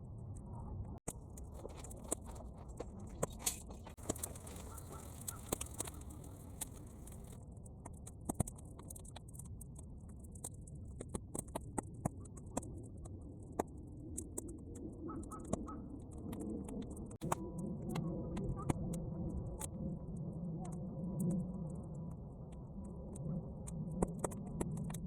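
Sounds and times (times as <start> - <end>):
low fire rumble: 0.0 - 25.0
bonfire crackling and popping: 1.1 - 14.9.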